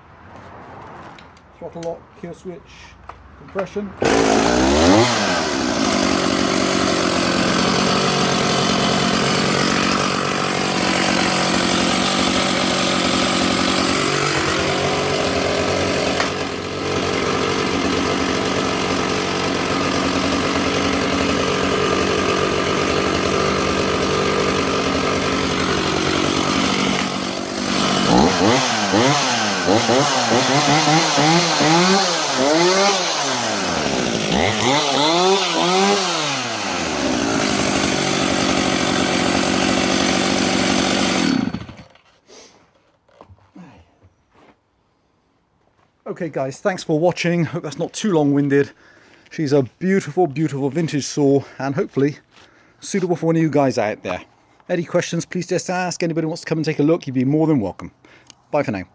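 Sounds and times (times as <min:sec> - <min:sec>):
chainsaw idling and revving: 0:04.0 - 0:42.0.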